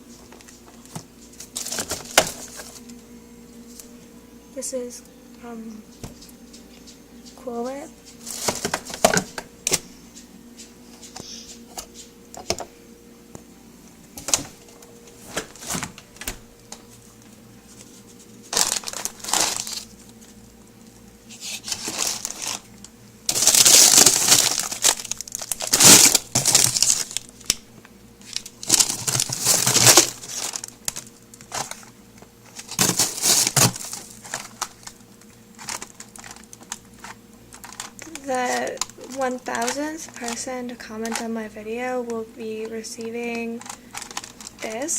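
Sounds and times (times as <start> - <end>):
packaging crinkling and rustling: 0.0 - 3.0, 8.1 - 9.8, 14.2 - 44.9.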